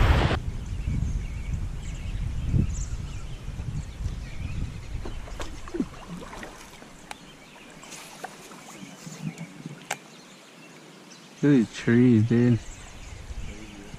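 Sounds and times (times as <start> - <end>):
wind buffeting microphone: 0.0 - 6.6, 11.9 - 13.9
water rushing: 5.2 - 12.5.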